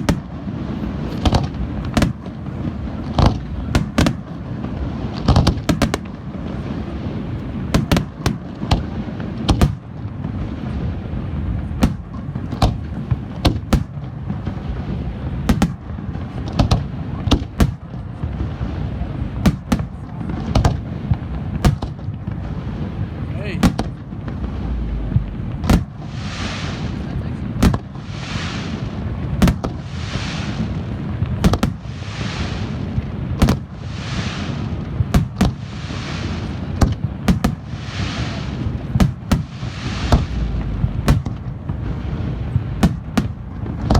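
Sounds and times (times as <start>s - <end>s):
low rumble: 23.1s - 36.8s, 37.5s - 42.8s
fireworks shell bursts: 37.3s - 41.4s.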